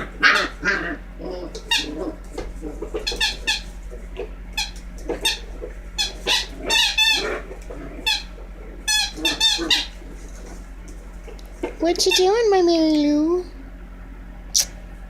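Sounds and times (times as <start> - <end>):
puppy yipping: 0.1 - 3.8, 4.6 - 8.3, 8.9 - 10.4.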